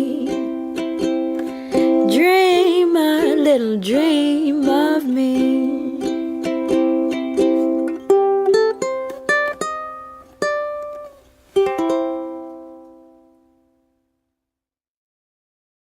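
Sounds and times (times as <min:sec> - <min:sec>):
plucked string instrument: 0:00.0 - 0:13.9.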